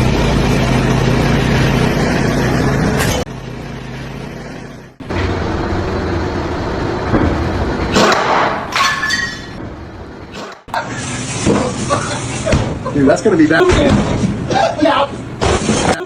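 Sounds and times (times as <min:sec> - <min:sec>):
engine running loudly: 0:00.0 - 0:08.7.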